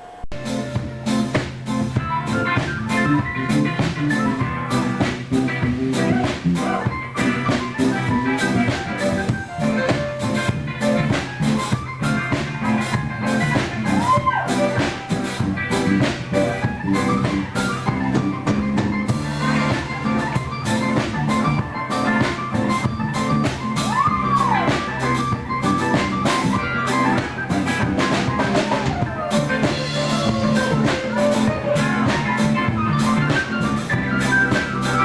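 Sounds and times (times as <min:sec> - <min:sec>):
drum kit steady beat: 0:00.0 - 0:35.0.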